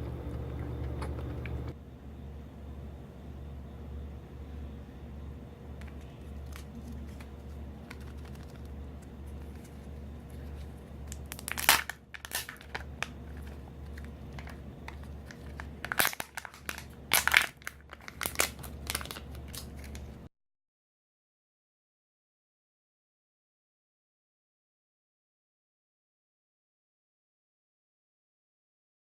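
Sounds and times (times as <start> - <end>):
steady low hum: 0.0 - 20.3
plastic packaging crinkling and tearing: 5.8 - 8.7, 9.4 - 20.2.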